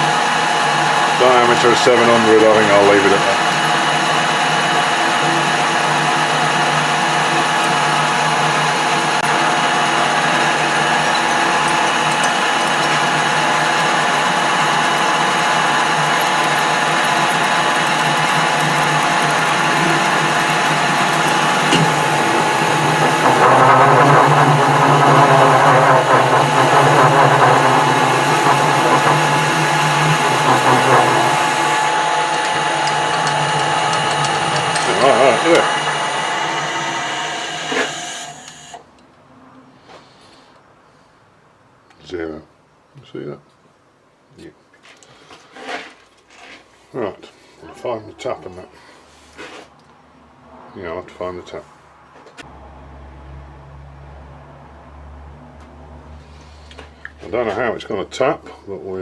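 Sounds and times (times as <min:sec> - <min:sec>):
metal lathe whirring: 0:00.0 - 0:38.8.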